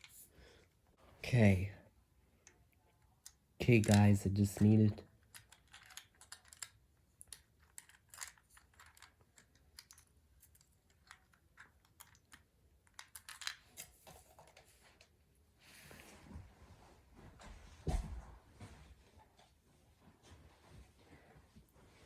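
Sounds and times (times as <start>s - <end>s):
plastic toy parts clicking: 3.2s - 14.0s.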